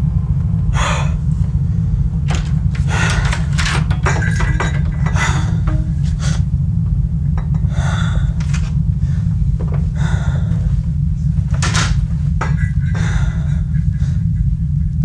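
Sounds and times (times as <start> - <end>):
low rumble: 0.0 - 15.0
short knocks: 2.3 - 6.3.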